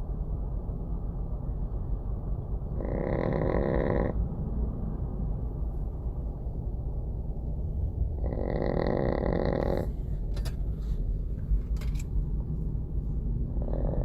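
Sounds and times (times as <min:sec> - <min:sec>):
steady low rumble: 0:00.0 - 0:14.0
small dog snoring: 0:02.8 - 0:04.2, 0:08.2 - 0:09.9, 0:13.6 - 0:14.0.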